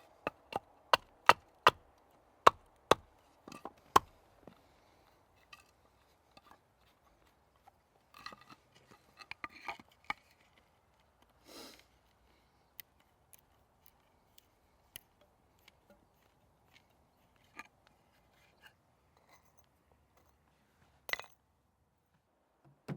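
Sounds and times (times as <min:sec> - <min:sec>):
hand tool clicks and scrapes on wood: 0:05.4 - 0:19.7.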